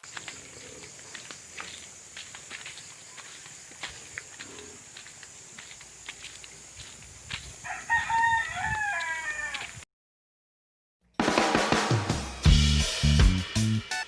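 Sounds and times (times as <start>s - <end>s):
rooster crowing: 7.6s - 9.8s.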